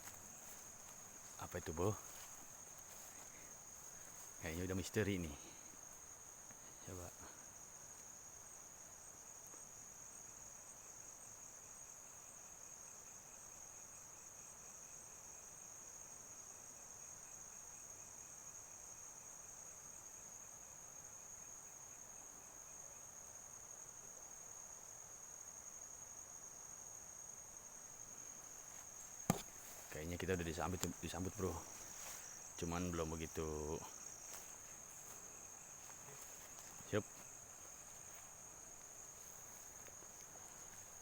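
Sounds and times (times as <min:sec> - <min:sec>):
insects chirring: 0:00.0 - 0:41.0
low background hiss: 0:00.0 - 0:41.0.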